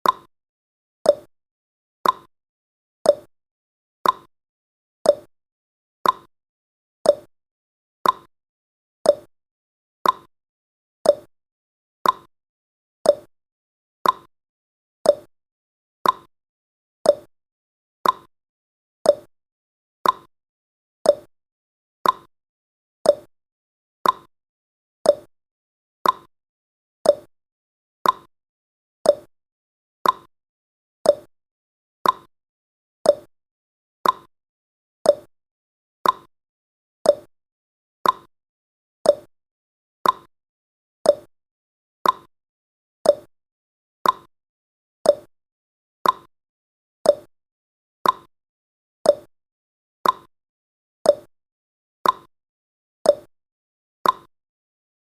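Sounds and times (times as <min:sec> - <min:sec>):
clock ticking: 0:34.0 - 0:34.3, 0:38.0 - 0:38.3, 0:40.0 - 0:40.3, 0:42.0 - 0:42.3, 0:44.0 - 0:44.3, 0:46.0 - 0:46.3, 0:50.0 - 0:50.3, 0:54.0 - 0:54.3.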